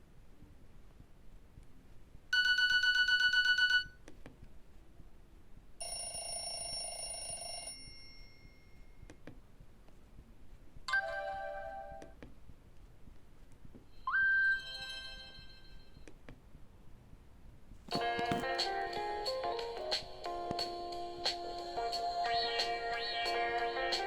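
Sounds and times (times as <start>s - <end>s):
phone ringtone beeps and chimes: 2.4s - 3.9s, 10.9s - 12.1s, 14.1s - 16.0s.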